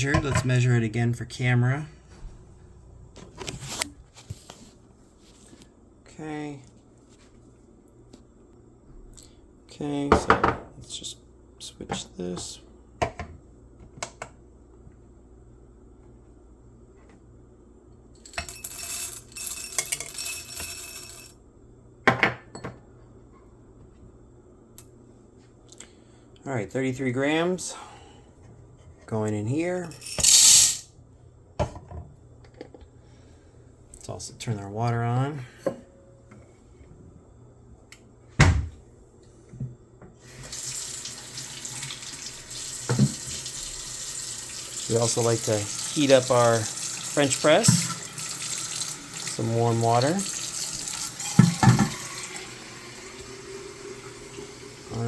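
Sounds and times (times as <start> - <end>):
coffee beans pouring: 29.9 - 30.8, 40.4 - 53.3
tap water running: 40.3 - 55.0.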